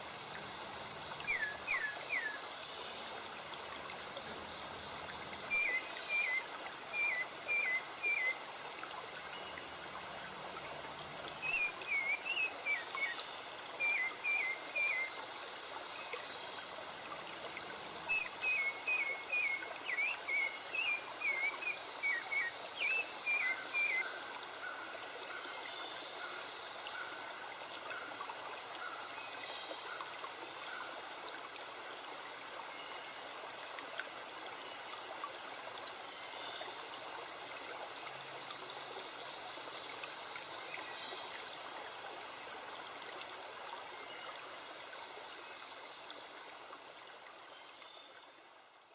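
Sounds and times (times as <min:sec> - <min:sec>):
stream running: 0:00.0 - 0:48.9
songbird chirping: 0:01.0 - 0:02.4, 0:05.4 - 0:08.4, 0:11.4 - 0:15.2, 0:18.0 - 0:24.2.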